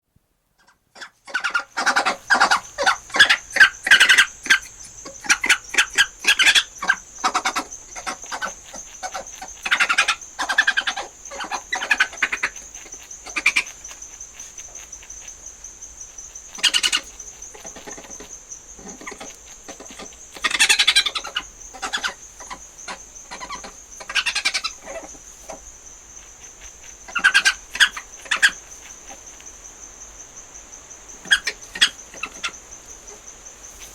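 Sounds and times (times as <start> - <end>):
high insect-like trill: 1.4 - 33.9
badger squealing: 18.8 - 25.6, 27.1 - 28.6.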